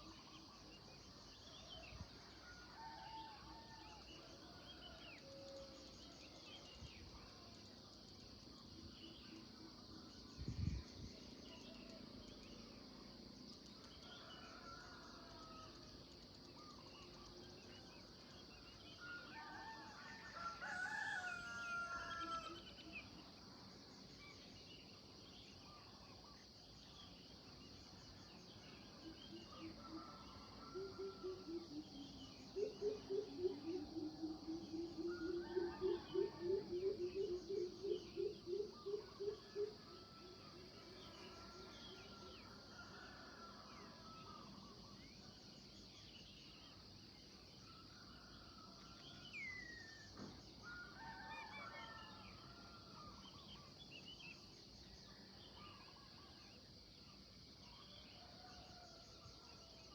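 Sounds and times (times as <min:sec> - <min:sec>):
rapid repeated bird calls: 0:28.8 - 0:43.2.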